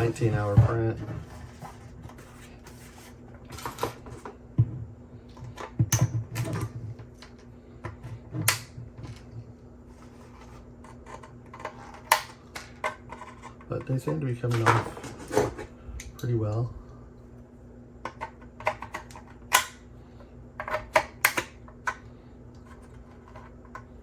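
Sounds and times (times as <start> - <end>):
faint steady hum: 0.0 - 24.0
plastic snapping and cracking: 8.4 - 8.7, 11.2 - 13.2, 18.1 - 19.8, 20.6 - 22.0.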